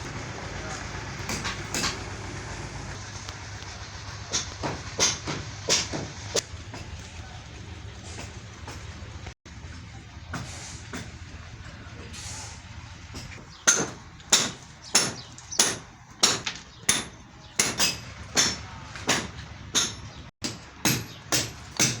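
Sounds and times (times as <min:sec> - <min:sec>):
hammer striking with ring: 0:13.2 - 0:22.0.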